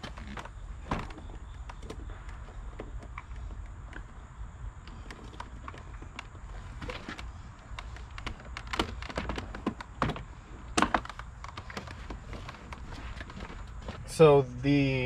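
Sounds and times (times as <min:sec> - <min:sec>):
steady low rumble: 0:00.0 - 0:15.0
plastic clicks and knocks: 0:05.1 - 0:14.0.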